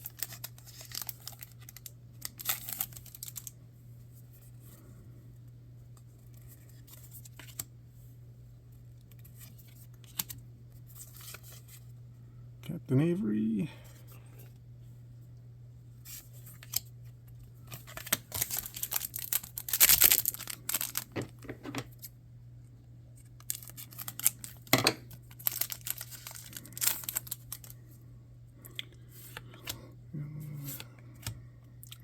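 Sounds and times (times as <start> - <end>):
steady low hum: 0.0 - 32.0
cards being shuffled: 17.7 - 22.1, 23.5 - 27.8.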